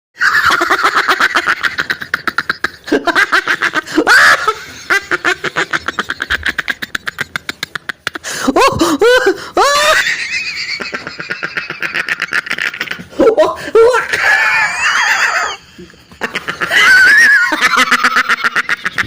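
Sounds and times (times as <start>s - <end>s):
rapid snickering laughter: 0.2s - 19.0s
squealing cries: 13.8s - 15.7s.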